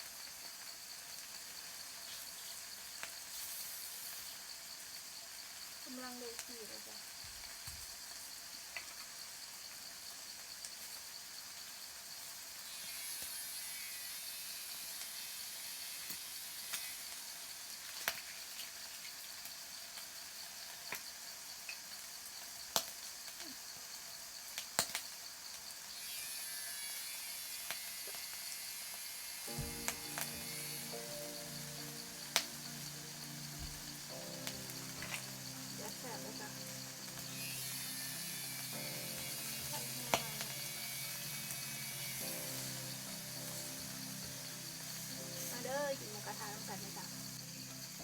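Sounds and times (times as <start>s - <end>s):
cicadas chorus: 0.0s - 48.0s
meat sizzling on a grill: 0.0s - 48.0s.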